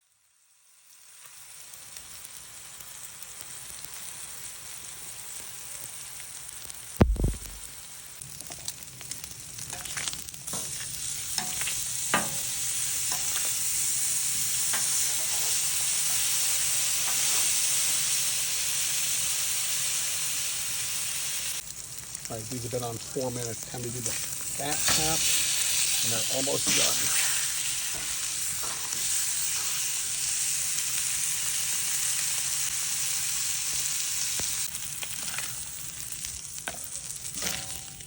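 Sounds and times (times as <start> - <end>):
steaks sizzling: 0.1 - 38.0
dull thump: 7.0 - 7.6
fat popping and crackling: 7.0 - 12.5.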